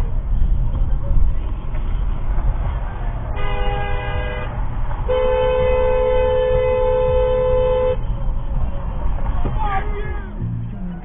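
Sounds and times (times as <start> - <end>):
road noise: 0.0 - 11.0
vehicle horn honking: 3.4 - 8.0.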